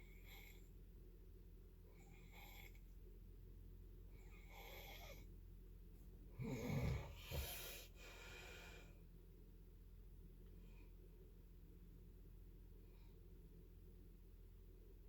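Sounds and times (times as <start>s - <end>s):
soft breathing: 6.3s - 9.1s
person snoring: 6.4s - 7.8s.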